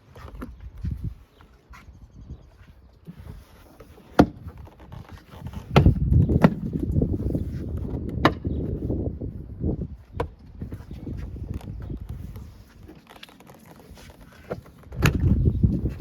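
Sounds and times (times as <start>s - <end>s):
handling rustling: 10.0s - 16.0s.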